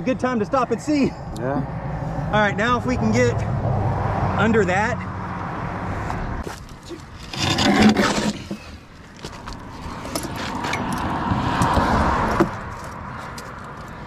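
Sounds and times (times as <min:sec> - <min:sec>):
metal clanking and scraping: 0:07.2 - 0:08.8.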